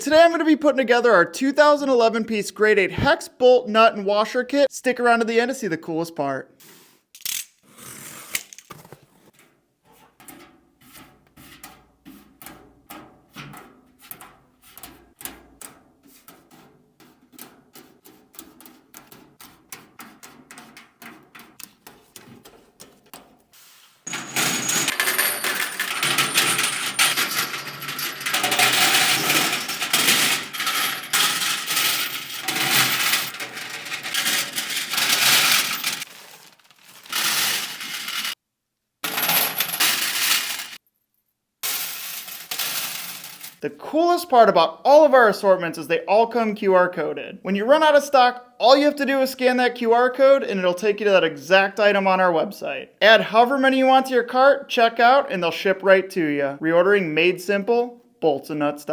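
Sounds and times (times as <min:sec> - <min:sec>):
bolts and nuts clinking: 0:24.1 - 0:36.1.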